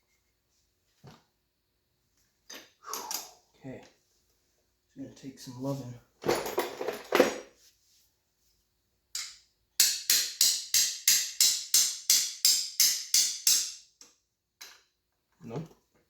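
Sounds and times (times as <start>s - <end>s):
hand tools clattering: 6.2s - 7.5s.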